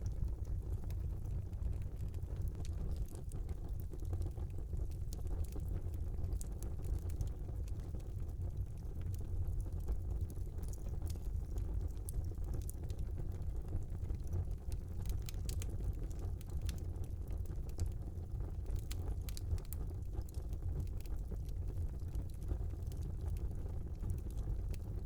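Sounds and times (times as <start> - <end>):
fire crackles and pops: 0.0 - 25.0
fire low rumble: 0.0 - 25.0.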